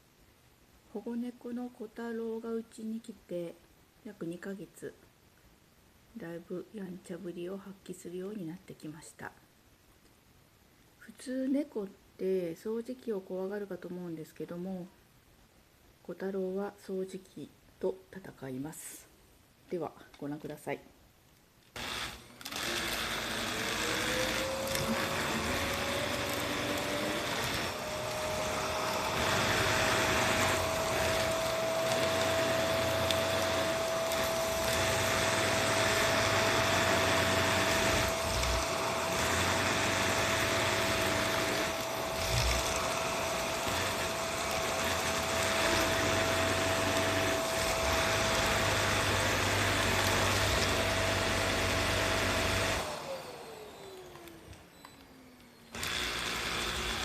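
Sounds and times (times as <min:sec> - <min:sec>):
vacuum cleaner motor whine: 0:21.8 - 0:57.0.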